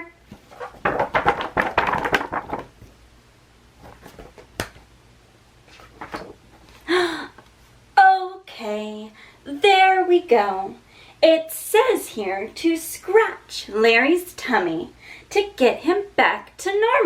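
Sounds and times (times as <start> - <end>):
book pages rattling: 0.3 - 3.0, 3.8 - 4.8, 5.6 - 6.8.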